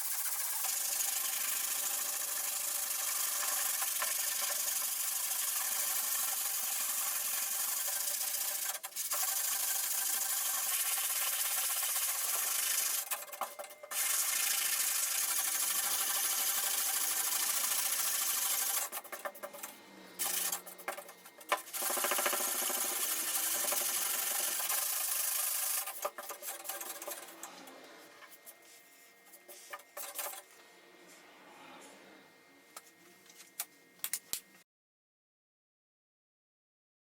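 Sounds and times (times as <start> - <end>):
sanding on a steel door: 0.0 - 13.3, 14.0 - 19.0.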